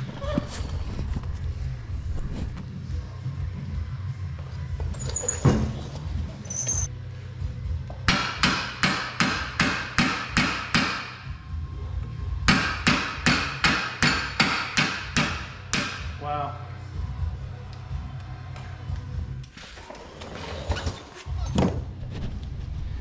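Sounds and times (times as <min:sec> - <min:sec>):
hammer striking metal: 0:08.1 - 0:11.3, 0:12.5 - 0:16.2.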